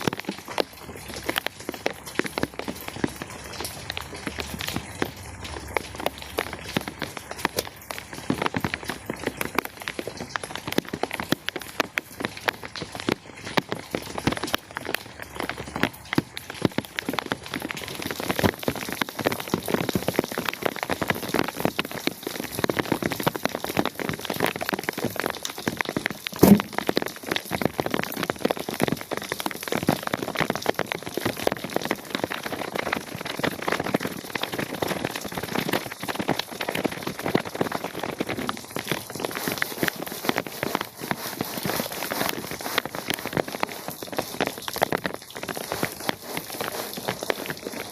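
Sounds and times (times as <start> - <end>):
rain pattering: 0.0 - 47.9
loud knock: 26.4 - 26.8.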